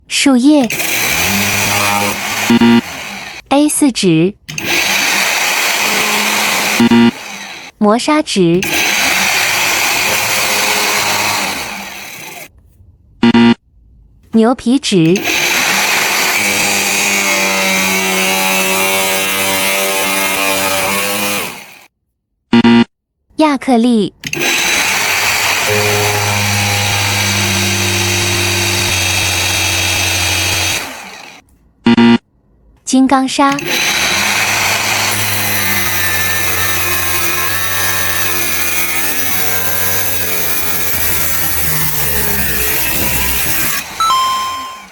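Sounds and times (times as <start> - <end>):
electric grinder whining: 0.6 - 3.5, 4.5 - 7.8, 8.6 - 12.5, 15.1 - 21.9, 24.3 - 31.4, 33.5 - 44.9
low motor hum: 25.4 - 31.4.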